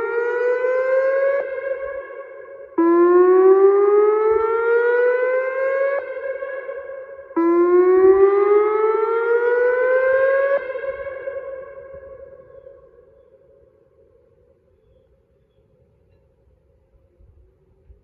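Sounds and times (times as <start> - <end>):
electronic siren whooping: 0.0 - 14.1.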